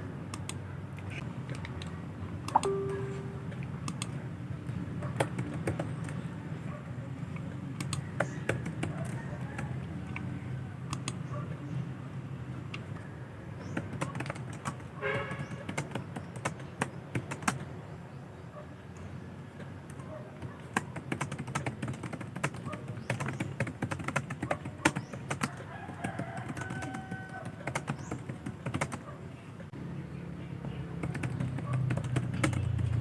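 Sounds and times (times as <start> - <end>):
keyboard typing clicks: 0.3 - 6.3, 7.3 - 10.3, 10.9 - 11.2, 13.6 - 17.7, 19.9 - 29.0, 31.0 - 33.0.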